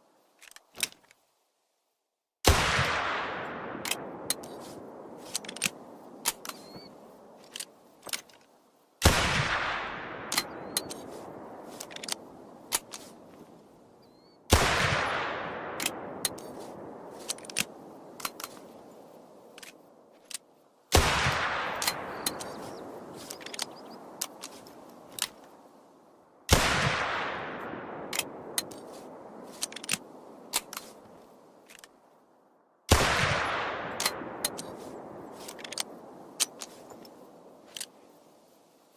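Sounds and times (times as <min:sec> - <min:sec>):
pistol shots with echo: 0:02.5 - 0:04.2, 0:14.5 - 0:16.3, 0:20.9 - 0:22.9, 0:26.5 - 0:28.5, 0:32.9 - 0:34.5.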